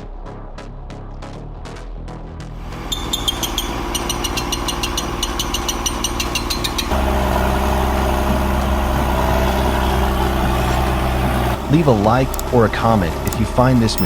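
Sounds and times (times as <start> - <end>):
heavy vehicle engine running: 2.6 - 14.0
fast even ticking: 2.7 - 10.2, 11.5 - 14.0.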